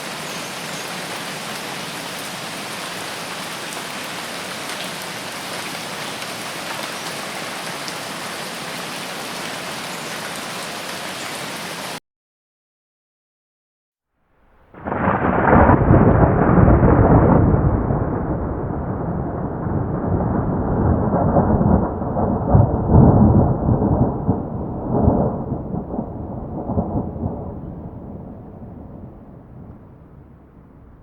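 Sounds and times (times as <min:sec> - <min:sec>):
thunder clap rumbling: 0:14.4 - 0:31.0.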